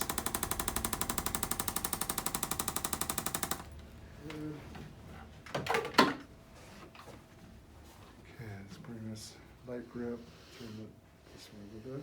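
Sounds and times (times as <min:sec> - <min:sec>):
electric percussion tapping rapidly: 0:00.0 - 0:03.7
sharp clicks: 0:00.0 - 0:03.7.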